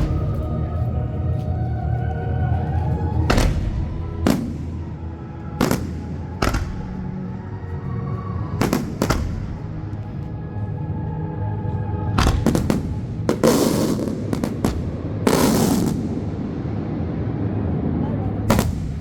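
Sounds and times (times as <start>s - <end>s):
fireworks bangs: 0.0s - 1.0s, 3.1s - 7.3s, 8.6s - 10.2s, 12.2s - 16.8s, 18.4s - 19.0s
music: 0.0s - 19.0s.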